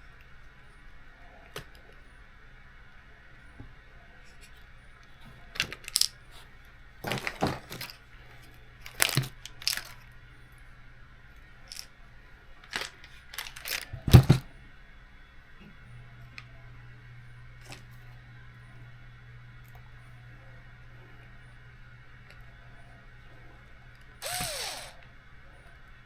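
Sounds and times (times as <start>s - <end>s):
screws and tools clinking: 8.8s - 10.0s.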